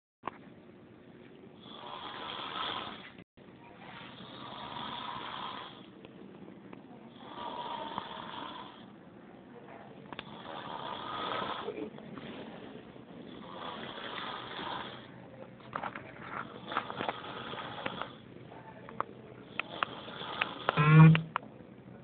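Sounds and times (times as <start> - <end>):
person snoring: 1.6 - 3.1, 4.2 - 5.9, 19.6 - 21.2
quiet breathing: 3.8 - 6.1, 9.6 - 20.8.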